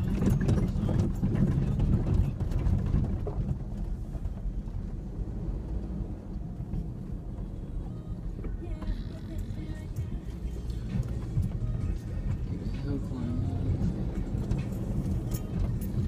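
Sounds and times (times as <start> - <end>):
knocks and rattles over rough ground: 0.0 - 16.0
pickup engine rumble: 0.0 - 16.0.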